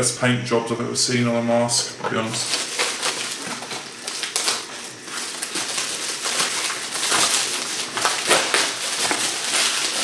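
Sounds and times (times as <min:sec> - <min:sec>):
packaging rustling and crinkling: 0:02.1 - 0:10.0.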